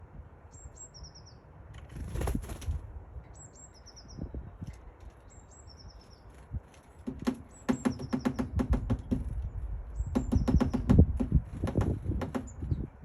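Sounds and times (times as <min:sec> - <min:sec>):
small bird singing: 0:00.4 - 0:01.5, 0:03.2 - 0:06.6, 0:07.2 - 0:11.1, 0:12.3 - 0:13.0
rushing wing flutter: 0:01.8 - 0:02.9.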